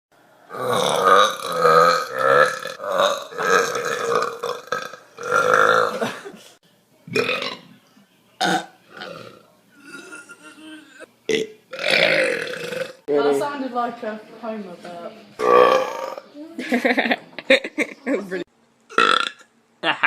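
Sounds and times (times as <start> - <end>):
person burping: 0.5 - 6.3, 7.1 - 7.6, 8.4 - 13.0, 15.4 - 16.3, 18.9 - 20.0.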